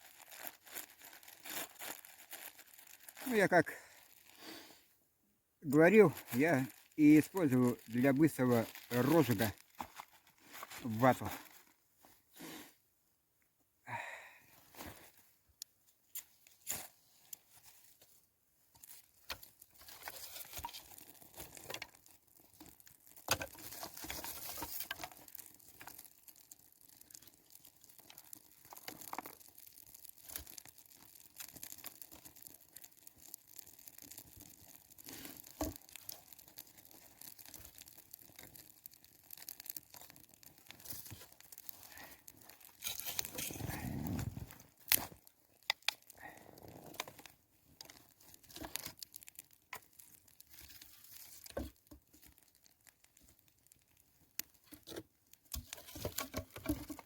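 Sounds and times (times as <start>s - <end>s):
twigs and bark rustling: 0.0s - 4.8s, 5.6s - 12.7s, 14.0s - 57.0s
campfire crackling: 0.0s - 12.9s, 13.9s - 57.0s.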